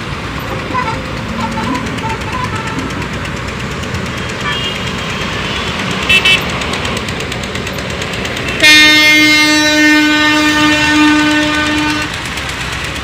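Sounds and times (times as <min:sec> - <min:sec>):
engine noise: 0:00.0 - 0:13.0
horn long steady note: 0:00.7 - 0:03.0, 0:04.2 - 0:06.4, 0:08.5 - 0:12.2.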